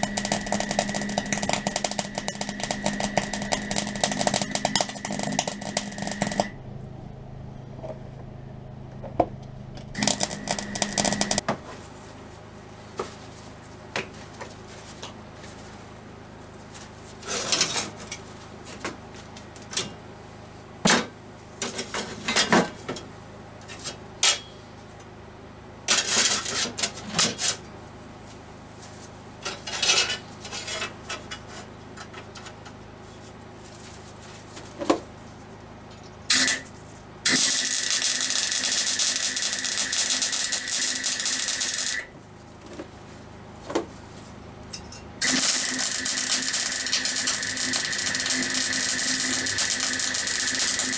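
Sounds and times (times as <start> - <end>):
power tool running: 0.0 - 6.5, 10.0 - 11.4, 36.3 - 42.1, 45.2 - 50.9.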